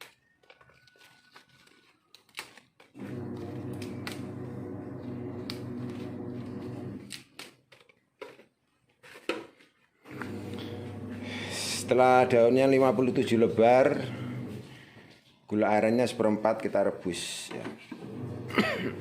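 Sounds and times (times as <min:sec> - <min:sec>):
steady low hum: 0:10.2 - 0:12.0.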